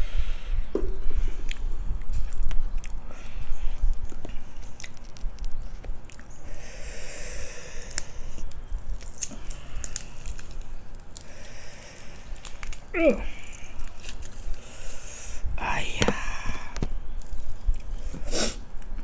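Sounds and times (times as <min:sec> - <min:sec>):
wet hissy chewing: 0:01.3 - 0:19.0
chewing crunchy food: 0:01.4 - 0:06.5, 0:07.7 - 0:15.1, 0:16.8 - 0:19.0.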